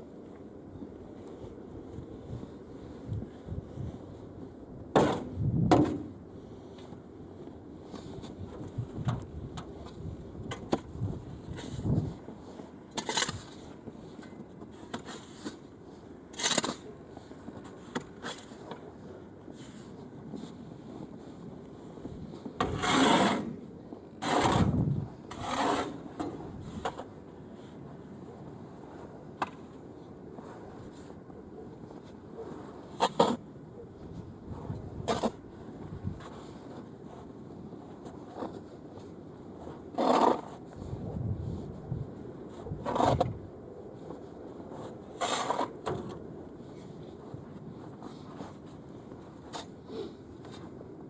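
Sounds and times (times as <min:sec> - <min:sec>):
snow shovel scraping: 0:11.4 - 0:27.0, 0:31.9 - 0:33.4, 0:34.6 - 0:41.0, 0:42.5 - 0:43.3, 0:44.1 - 0:45.8, 0:46.7 - 0:50.7.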